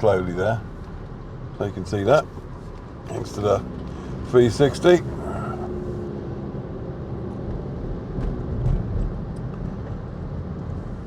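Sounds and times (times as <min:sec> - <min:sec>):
car driving slowly: 0:00.0 - 0:11.0.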